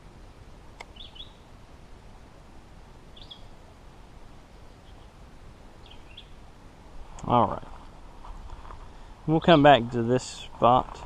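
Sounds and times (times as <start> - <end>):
faint outdoor background noise: 0.0 - 11.0
small bird chirping: 0.8 - 1.5, 3.1 - 3.5, 4.5 - 5.2, 5.8 - 6.4.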